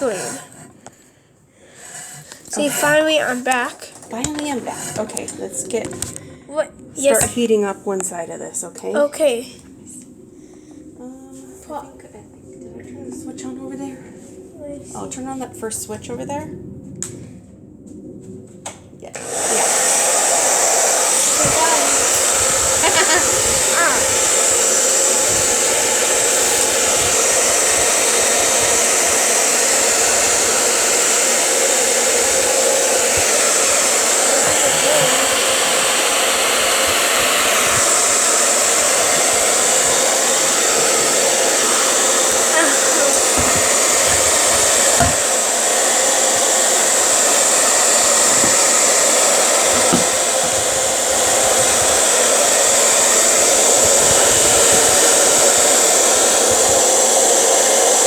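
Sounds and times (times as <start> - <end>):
hair dryer blowing: 0.0 - 0.9, 1.8 - 6.2, 6.9 - 7.6, 19.1 - 58.0.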